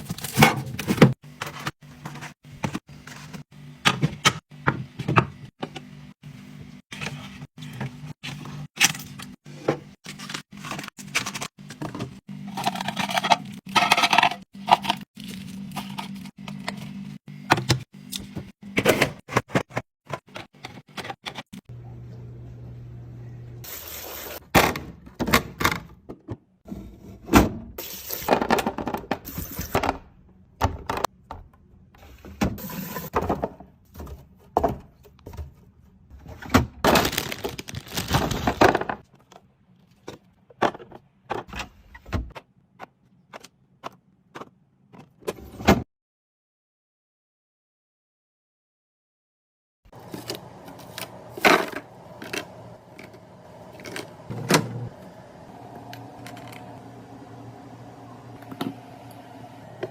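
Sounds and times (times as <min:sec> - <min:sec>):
containers clicking and clattering: 0:10.2 - 0:16.8
packaging rustling: 0:36.9 - 0:38.6.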